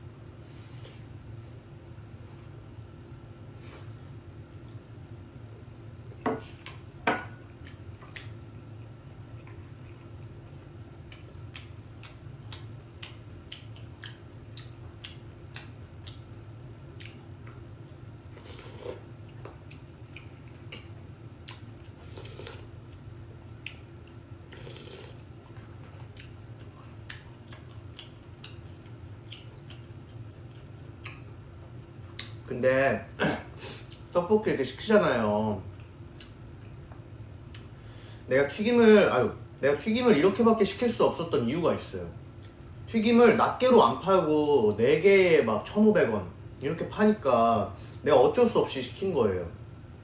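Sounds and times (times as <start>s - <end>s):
low room hum: 0.0s - 50.0s
chewing: 7.6s - 16.2s, 16.9s - 17.6s, 18.4s - 23.0s, 23.6s - 31.3s.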